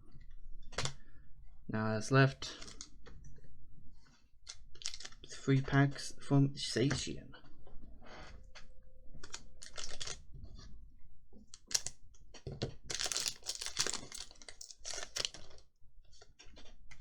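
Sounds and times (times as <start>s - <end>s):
foil wrapper crinkling and tearing: 11.6s - 11.9s, 12.9s - 15.6s.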